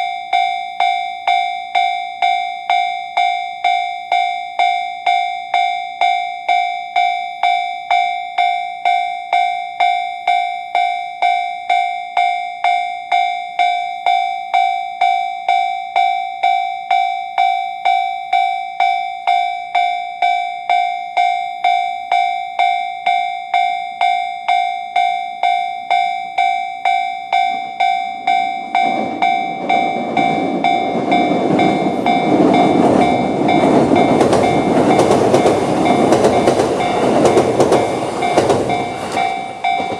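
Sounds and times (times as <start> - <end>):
level crossing electronic bell: 15.8 - 39.9
electric train rumbling past: 27.3 - 39.9.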